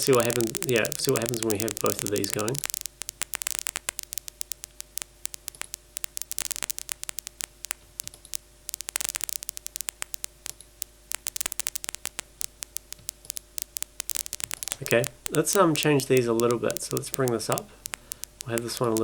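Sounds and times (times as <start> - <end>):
faint steady hum: 0.0 - 19.0
synthesized paper crumple clicks: 0.0 - 19.0.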